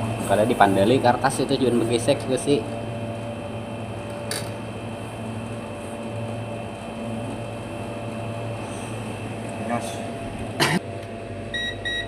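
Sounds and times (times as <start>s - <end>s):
machine hum: 0.0s - 12.0s.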